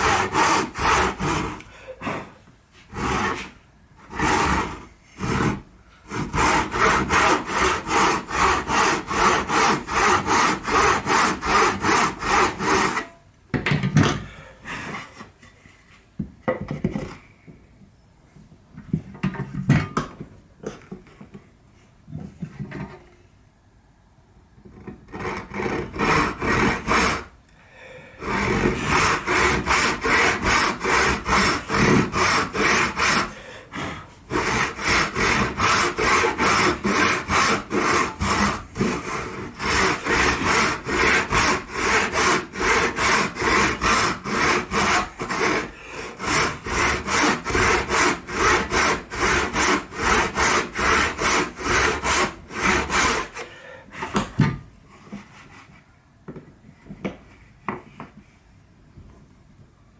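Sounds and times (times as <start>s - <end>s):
hand saw cutting wood: 0.0s - 2.3s, 2.9s - 13.2s, 24.7s - 27.3s, 28.2s - 54.3s.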